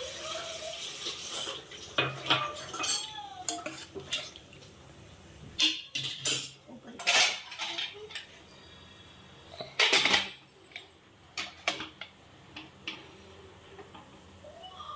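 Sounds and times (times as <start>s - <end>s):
dishes and cutlery clattering: 1.4s - 4.4s, 5.6s - 8.4s, 9.6s - 13.0s.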